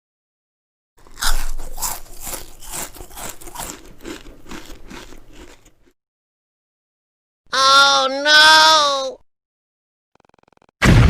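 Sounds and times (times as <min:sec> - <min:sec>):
rhythmic crunching: 0:01.1 - 0:05.7.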